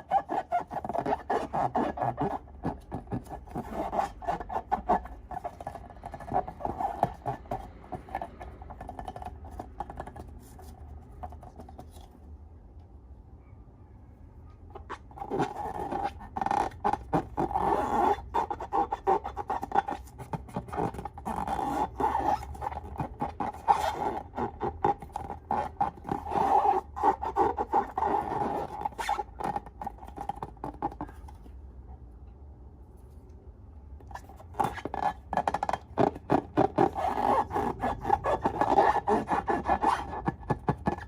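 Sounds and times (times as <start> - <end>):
scraping and scratching: 0.0 - 12.4, 14.7 - 31.6, 34.0 - 41.0.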